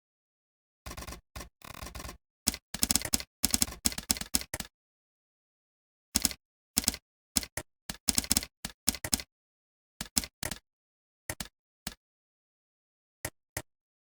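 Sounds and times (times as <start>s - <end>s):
typing on computer keyboard: 0.9s - 4.7s, 6.2s - 9.3s, 10.0s - 10.6s.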